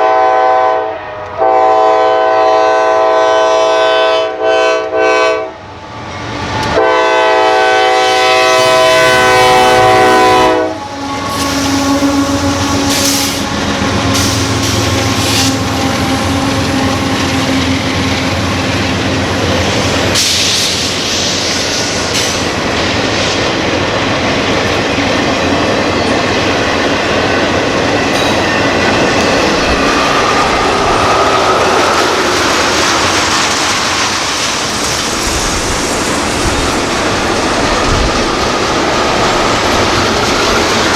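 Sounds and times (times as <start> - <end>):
locomotive air horn chord: 0.0 - 5.6, 6.8 - 19.0
diesel locomotives passing: 0.0 - 40.9.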